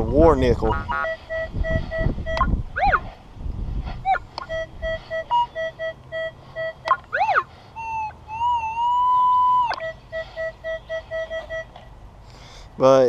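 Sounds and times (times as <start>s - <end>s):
swooping electronic tone: 0.1s - 3.1s, 4.1s - 11.8s
long held electronic tone: 0.7s - 3.0s, 4.1s - 11.8s
metal detector rapid beeping: 0.7s - 3.1s, 4.1s - 11.8s.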